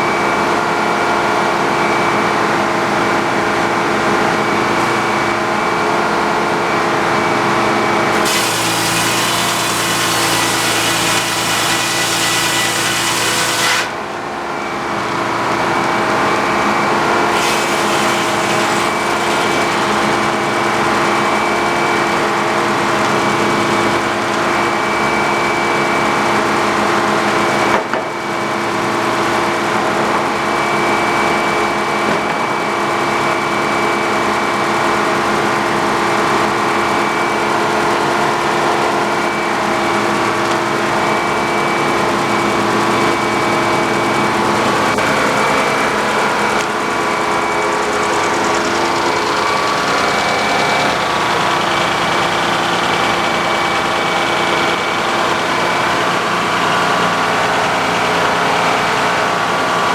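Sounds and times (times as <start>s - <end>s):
sawmill engine running: 0.0s - 59.9s
harsh sawing noise: 8.1s - 14.0s, 17.2s - 24.3s.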